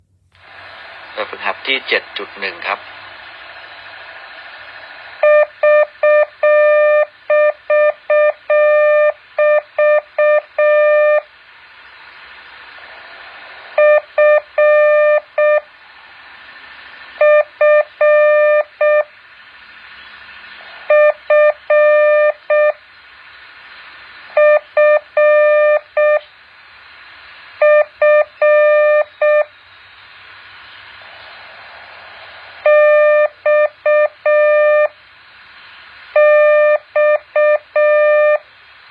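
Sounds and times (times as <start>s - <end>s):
steady hiss: 0.0s - 38.9s
morse code beeps: 5.2s - 11.3s, 13.8s - 15.7s, 17.2s - 19.1s, 20.9s - 22.8s, 24.4s - 26.2s, 27.6s - 29.5s, 32.6s - 35.0s, 36.2s - 38.4s.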